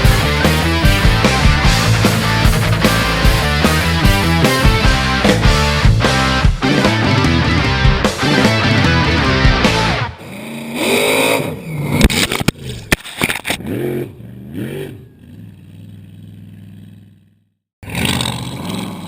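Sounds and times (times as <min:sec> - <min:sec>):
truck engine revving: 0:00.0 - 0:07.6.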